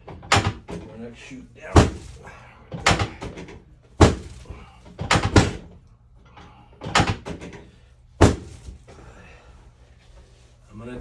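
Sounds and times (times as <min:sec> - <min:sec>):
sharp knocks of chiropractic thrusts: 0:00.0 - 0:00.9, 0:01.7 - 0:05.8, 0:06.8 - 0:09.0.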